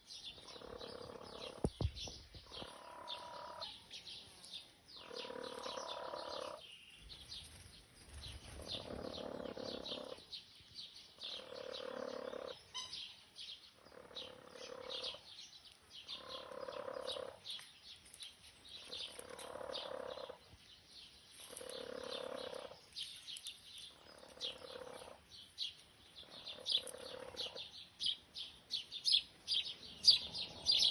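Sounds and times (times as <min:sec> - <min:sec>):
small birds chirping: 0:00.0 - 0:30.9
hen snoring: 0:00.4 - 0:01.7, 0:02.5 - 0:03.7, 0:05.0 - 0:06.6, 0:08.7 - 0:10.2, 0:11.2 - 0:12.6, 0:13.8 - 0:15.2, 0:16.1 - 0:17.4, 0:19.2 - 0:20.4, 0:21.6 - 0:22.8, 0:24.0 - 0:25.2, 0:26.2 - 0:27.7.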